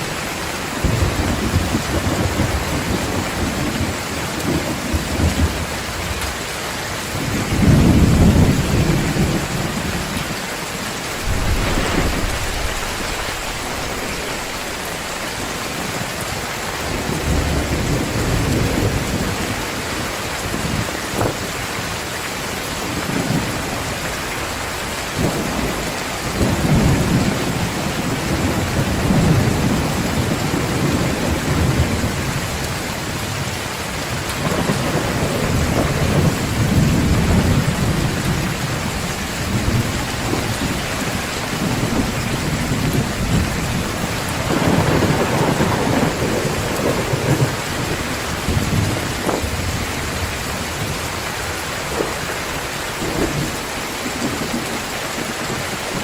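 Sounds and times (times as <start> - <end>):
heavy rain pouring: 0.0 - 56.0
thunder rumbling: 7.1 - 19.6, 25.2 - 33.4, 34.3 - 54.7.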